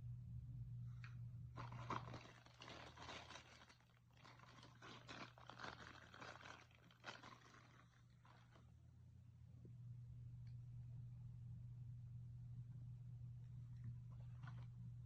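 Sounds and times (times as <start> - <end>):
low steady hum: 0.0 - 15.0
scratchy rustling and crackling: 1.6 - 8.7.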